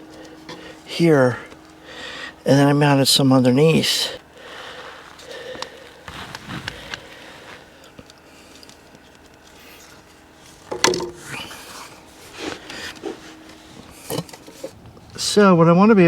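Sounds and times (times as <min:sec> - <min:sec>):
light clicks and scrapes: 0:05.0 - 0:15.0.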